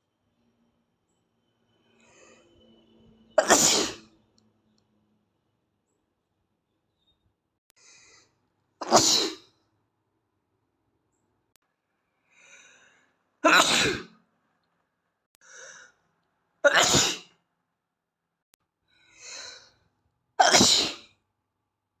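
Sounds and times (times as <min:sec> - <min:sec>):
boy sneezing: 0:03.4 - 0:04.0, 0:08.8 - 0:09.4, 0:13.4 - 0:14.1, 0:16.7 - 0:17.3, 0:20.4 - 0:21.0.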